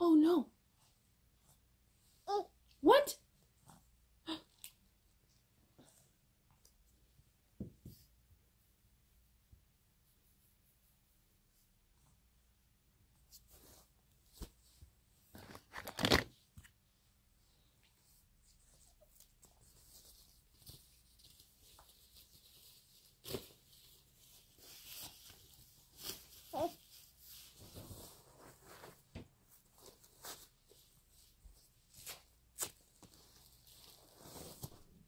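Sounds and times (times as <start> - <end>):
rustling and crinkling: 13.1 - 35.0.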